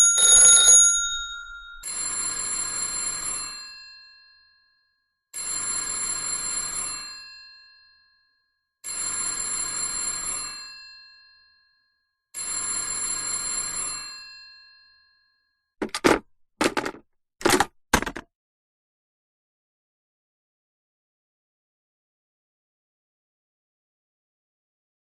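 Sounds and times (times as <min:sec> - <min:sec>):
telephone bell ringing: 0:00.0 - 0:04.5, 0:05.4 - 0:08.1, 0:08.9 - 0:11.6, 0:12.4 - 0:15.1.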